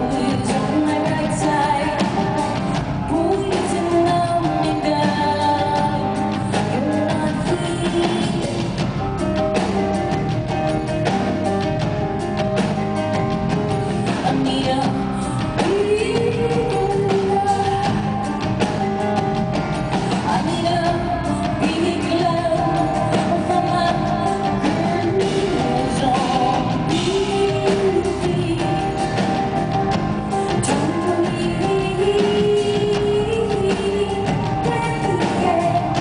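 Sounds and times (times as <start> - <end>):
woman singing: 0.0 - 11.8, 13.1 - 36.0
drum kit beat: 0.0 - 36.0
keyboards: 0.0 - 36.0
rock band playing: 0.0 - 36.0.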